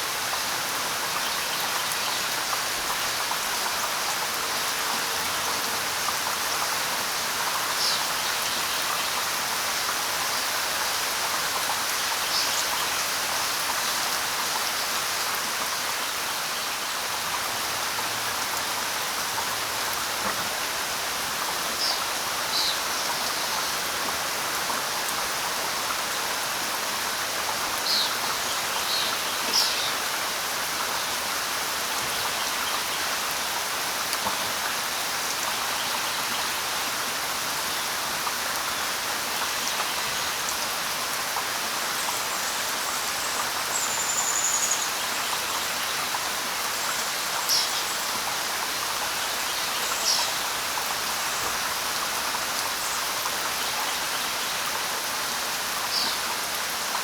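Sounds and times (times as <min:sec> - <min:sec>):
light rain on leaves: 0:00.0 - 0:57.0.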